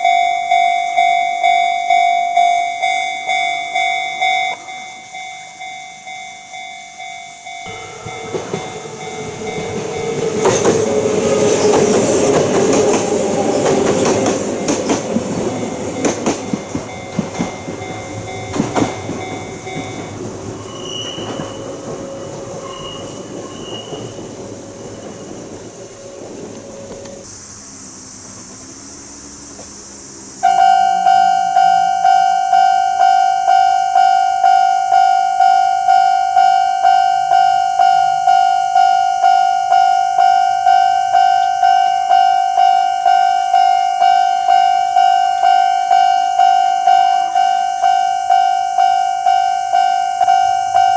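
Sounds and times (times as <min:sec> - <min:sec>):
level-crossing alarm ringing: 0:00.0 - 0:23.2, 0:27.2 - 0:50.9
wheel squeal: 0:07.7 - 0:15.0, 0:15.6 - 0:50.9
train wheels clacking over rail joints: 0:07.7 - 0:27.4.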